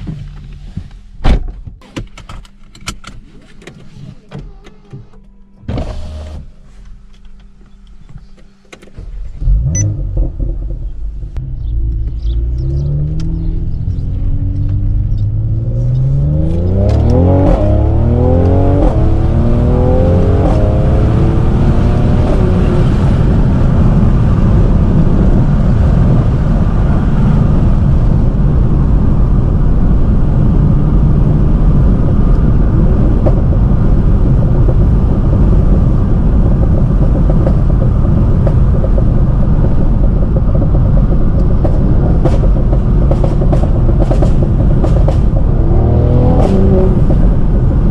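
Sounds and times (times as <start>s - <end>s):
car engine accelerating: 5.8s - 47.9s.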